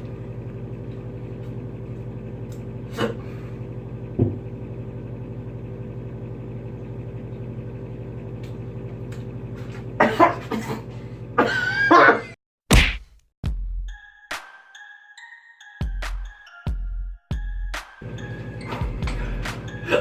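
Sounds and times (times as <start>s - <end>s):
low electrical hum: 0.0s - 12.2s
person hiccuping: 11.4s - 12.3s.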